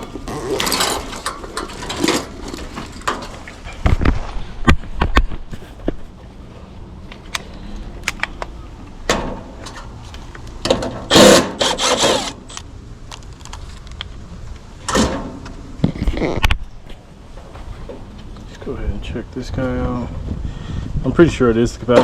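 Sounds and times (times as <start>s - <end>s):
metal scraping rasp: 11.1s - 12.4s.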